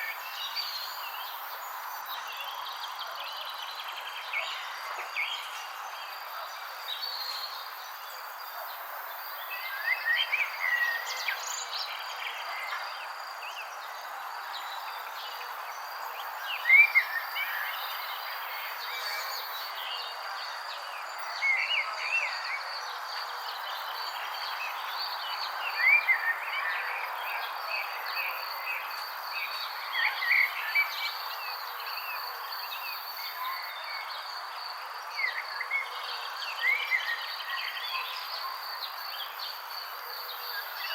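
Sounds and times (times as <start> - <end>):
songbirds singing: 0.0 - 40.9
steady background hiss: 0.0 - 40.9.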